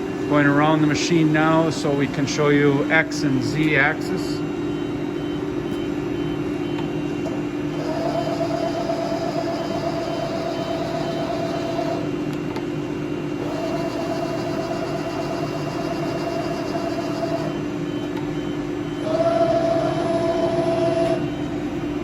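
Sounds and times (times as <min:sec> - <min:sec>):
axis drive whining: 0:13.4 - 0:22.0.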